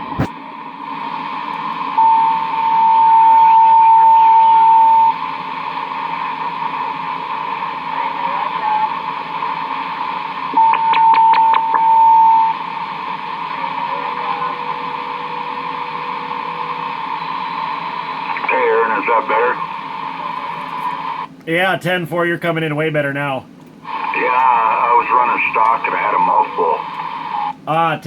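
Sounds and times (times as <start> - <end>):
radio static hiss: 0.0 - 21.4, 22.2 - 28.0
whistle-like radio tone: 2.0 - 5.2, 10.5 - 12.6, 13.3 - 19.7.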